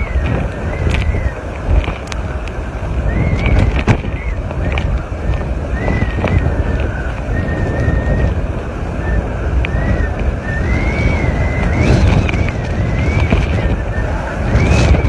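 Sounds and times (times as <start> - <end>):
strong wind buffeting microphone: 0.0 - 15.0
thin high whistle: 5.7 - 8.3, 9.0 - 15.0.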